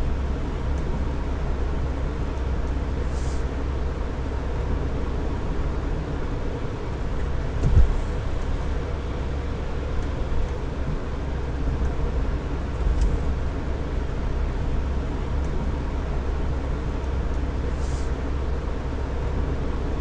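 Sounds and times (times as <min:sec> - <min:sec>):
tyre and engine rumble: 0:00.0 - 0:20.0
low thump: 0:07.6 - 0:08.3.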